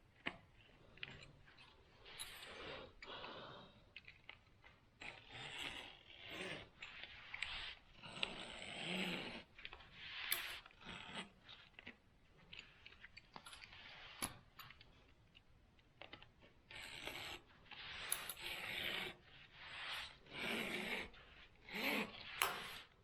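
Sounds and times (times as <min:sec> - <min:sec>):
knife scraping and slicing mesh: 0:16.7 - 0:23.0.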